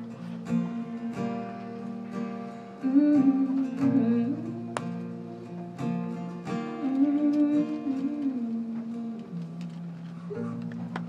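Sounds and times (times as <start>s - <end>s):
acoustic guitar strumming: 0.0s - 11.0s
person humming: 2.8s - 5.8s, 6.6s - 10.8s.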